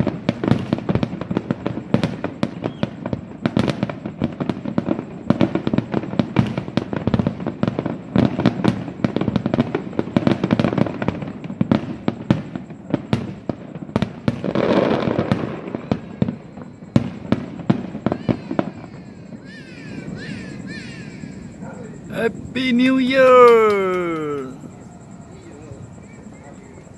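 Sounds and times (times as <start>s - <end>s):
fireworks bangs and pops: 0.0s - 19.5s, 22.0s - 24.9s
fireworks hissing: 20.6s - 24.8s.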